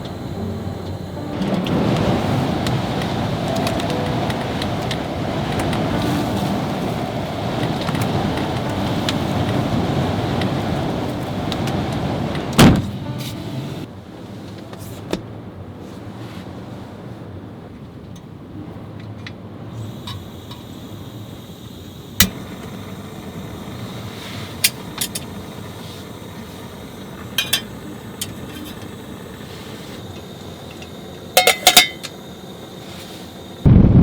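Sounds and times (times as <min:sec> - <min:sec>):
low steady rumble: 0:00.0 - 0:19.8
objects clinking and knocking: 0:30.7 - 0:32.2.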